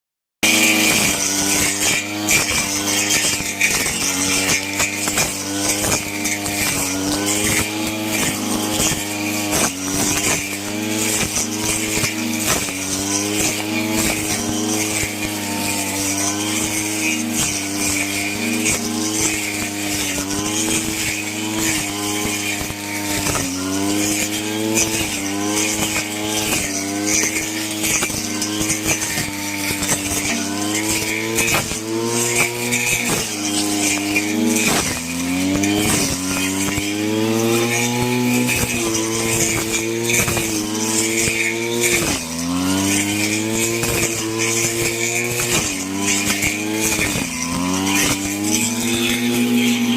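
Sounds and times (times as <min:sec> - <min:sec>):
brush cutter cutting grass: 0:00.4 - 0:49.9.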